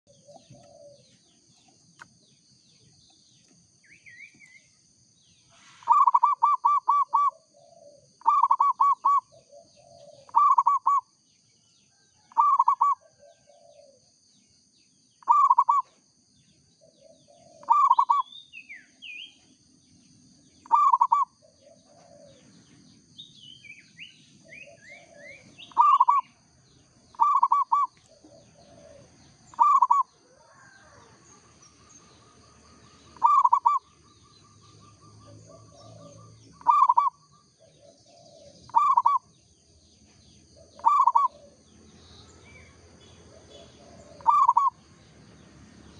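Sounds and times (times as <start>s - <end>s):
small birds chirping: 0.0s - 45.9s
dove cooing: 0.1s - 1.3s, 5.6s - 11.1s, 12.2s - 14.0s, 15.2s - 16.0s, 16.8s - 18.3s, 20.6s - 22.9s, 23.7s - 26.4s, 27.1s - 31.4s, 32.1s - 39.3s, 40.3s - 41.8s, 43.0s - 44.8s.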